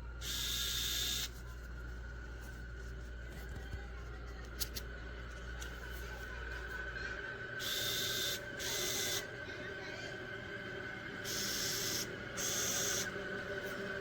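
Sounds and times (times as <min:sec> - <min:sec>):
electric screwdriver motor whirring: 0:00.2 - 0:01.3, 0:07.6 - 0:09.2, 0:11.3 - 0:13.1.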